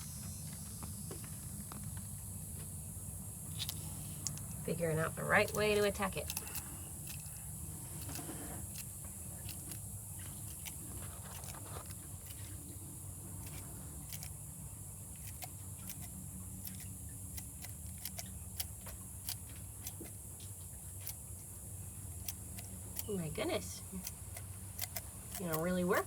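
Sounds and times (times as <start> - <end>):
low background hum: 0.0 - 26.0
lizard biting egg clicks: 5.3 - 20.2, 22.2 - 23.3, 24.0 - 26.0.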